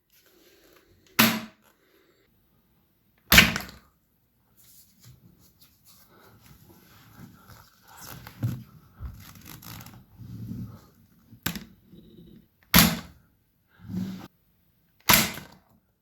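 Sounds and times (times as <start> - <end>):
toy rifle handling rustles: 9.2 - 10.0.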